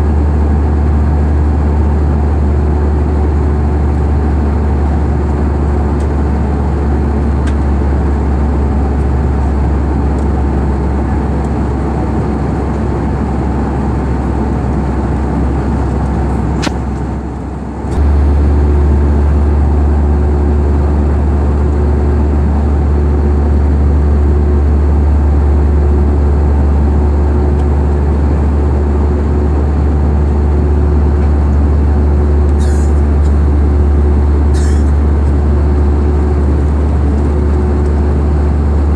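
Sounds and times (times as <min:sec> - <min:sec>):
low engine drone: 0:00.0 - 0:38.9.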